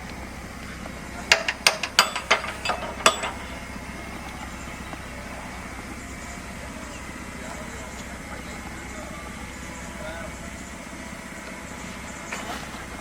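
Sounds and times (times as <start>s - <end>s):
earthmoving machinery engine drone: 0.0s - 13.0s
sharp metallic clanks: 1.2s - 3.7s.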